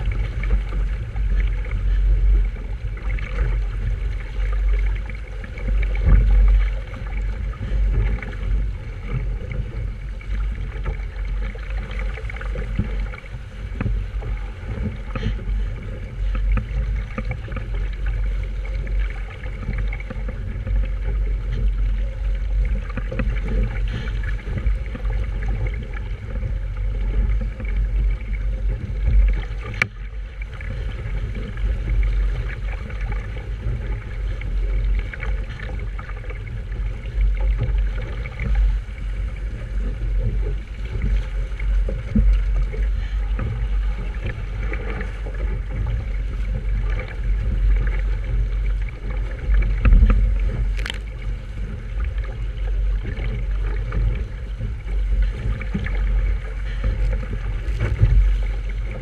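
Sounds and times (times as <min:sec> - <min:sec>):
water rushing along hull: 0:00.0 - 0:59.0
wind buffeting microphone: 0:00.0 - 0:59.0.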